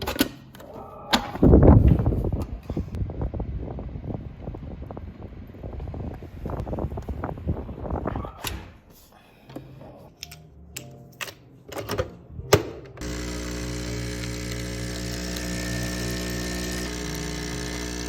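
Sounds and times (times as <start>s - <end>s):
small electric motor buzzing: 13.0s - 18.0s.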